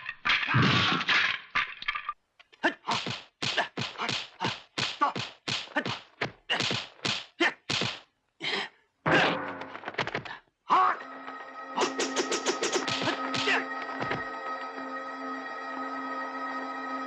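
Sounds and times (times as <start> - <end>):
punch and strike hits: 6.6 - 8.0.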